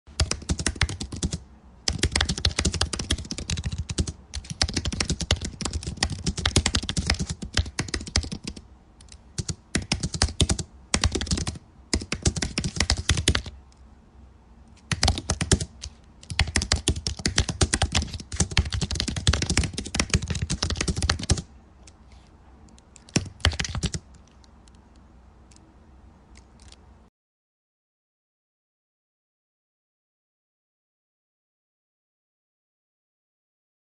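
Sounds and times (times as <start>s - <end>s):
rapid keyboard typing: 0.1s - 13.6s, 14.8s - 22.0s, 22.8s - 24.8s, 26.4s - 26.8s.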